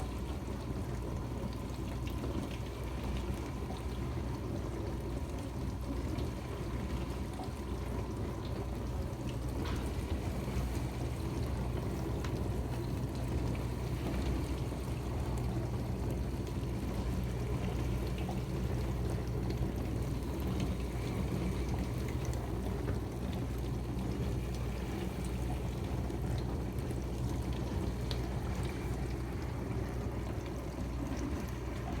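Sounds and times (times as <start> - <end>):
dishwasher motor hum: 0.0 - 32.0
water spraying and sloshing: 8.0 - 32.0.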